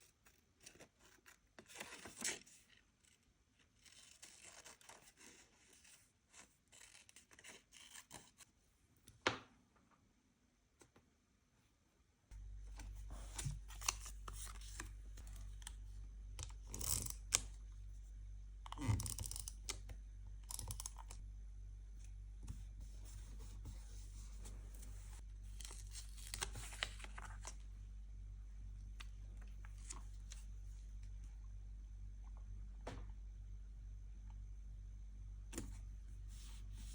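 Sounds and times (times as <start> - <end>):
steady low hum: 12.3 - 36.9
paper tearing and rustling: 25.5 - 27.6.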